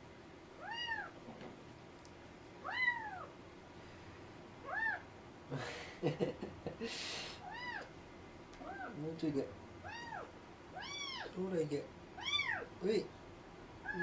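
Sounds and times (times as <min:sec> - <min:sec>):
kitten meowing: 0:00.6 - 0:01.1, 0:02.6 - 0:03.3, 0:09.8 - 0:11.4, 0:12.2 - 0:12.7.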